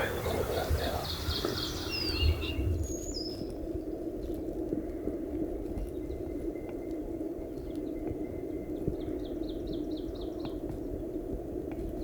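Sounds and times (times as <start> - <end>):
low background rush: 0.0 - 3.0
songbird whistles: 0.0 - 3.4.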